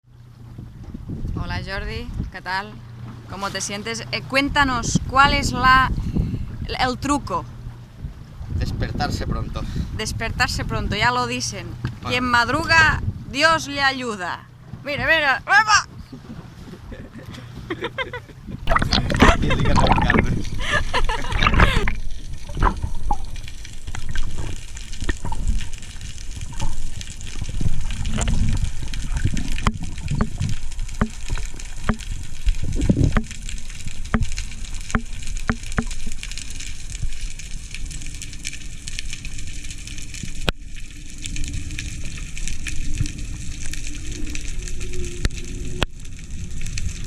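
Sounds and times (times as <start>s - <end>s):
underwater water rushing: 18.6s - 47.0s
sharp clicks and knocks: 34.0s - 36.0s.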